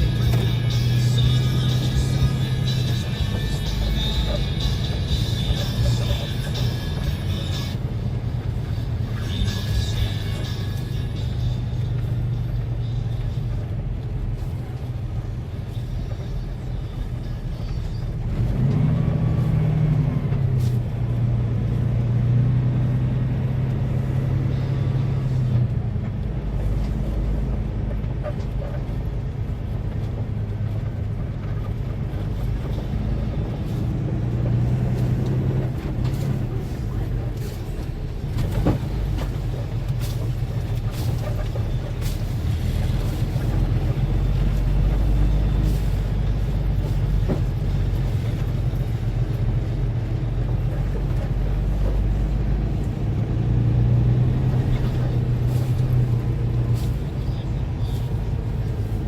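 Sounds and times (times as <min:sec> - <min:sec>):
truck diesel engine running: 0:00.0 - 0:59.0.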